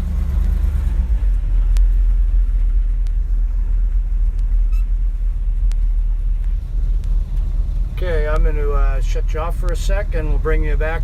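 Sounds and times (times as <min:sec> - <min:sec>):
truck engine idling: 0:00.0 - 0:11.0.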